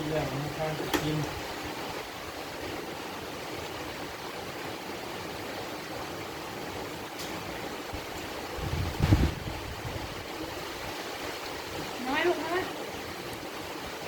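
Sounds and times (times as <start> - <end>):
steady rushing noise: 6.6 - 12.2.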